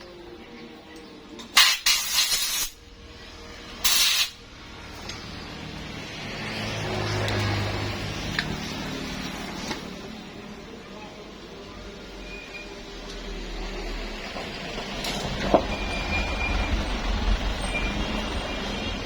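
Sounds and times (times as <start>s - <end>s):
pressurised spray hissing: 1.6s - 2.8s, 3.8s - 4.4s.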